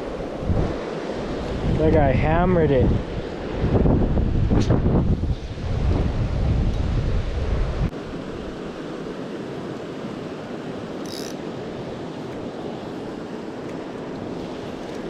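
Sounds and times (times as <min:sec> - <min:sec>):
river water rushing: 0:08.0 - 0:15.0.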